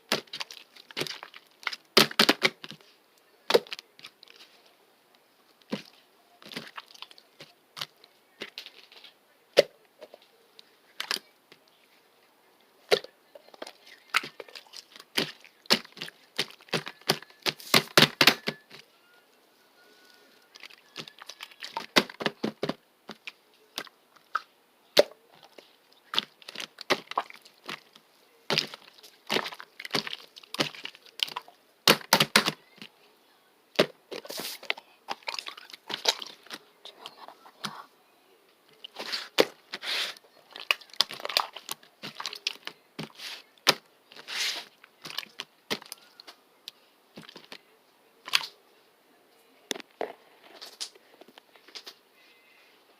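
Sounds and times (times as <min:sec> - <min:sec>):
slime squished by hand: 0:23.1 - 0:32.6.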